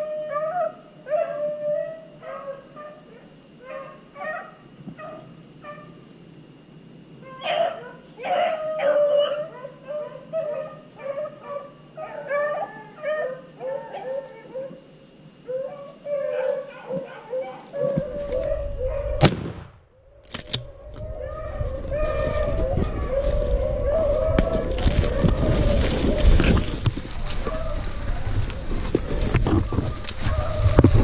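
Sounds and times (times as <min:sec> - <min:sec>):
beagles baying: 0:07.2 - 0:19.3, 0:20.7 - 0:31.0.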